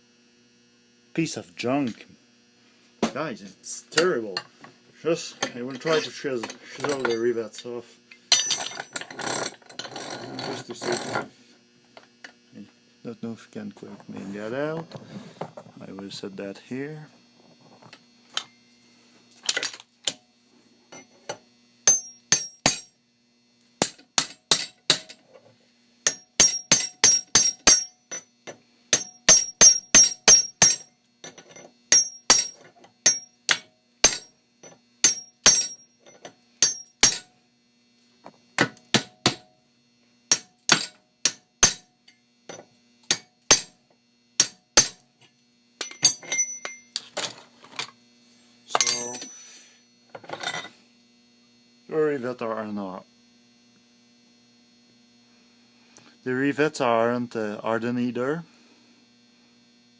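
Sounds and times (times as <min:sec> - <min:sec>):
hammer striking chisel on metal: 0:08.3 - 0:08.8, 0:21.9 - 0:22.9, 0:23.8 - 0:25.2, 0:26.0 - 0:28.2, 0:28.9 - 0:30.9, 0:31.9 - 0:35.9, 0:36.6 - 0:37.3, 0:38.6 - 0:39.5, 0:40.3 - 0:41.9, 0:42.5 - 0:43.8, 0:44.4 - 0:45.0, 0:45.8 - 0:47.0, 0:48.7 - 0:49.4.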